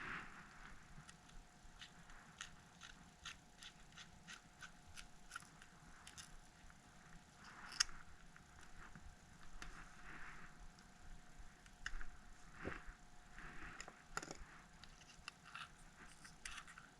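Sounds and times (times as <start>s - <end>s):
screwdriver clicking and scraping: 1.1s - 6.4s, 14.2s - 16.9s.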